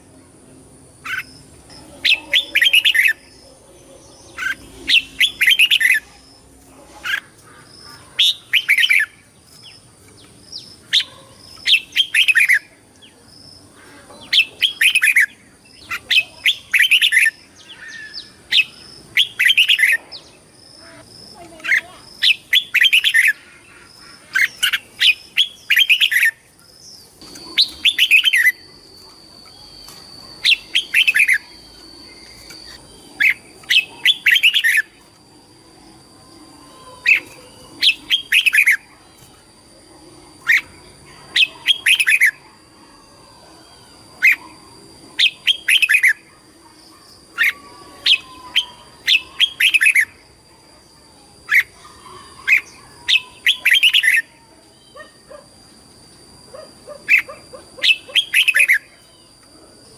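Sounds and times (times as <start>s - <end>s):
bird singing warbling phrases: 0.0s - 59.7s.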